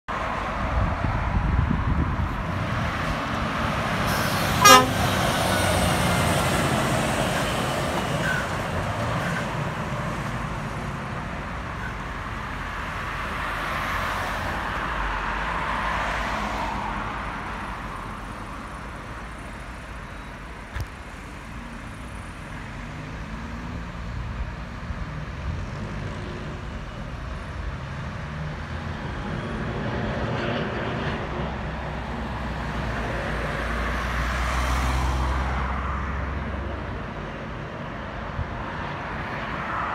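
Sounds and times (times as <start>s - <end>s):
truck engine rumble: 0.5s - 13.6s
truck horn toot: 4.1s - 5.7s.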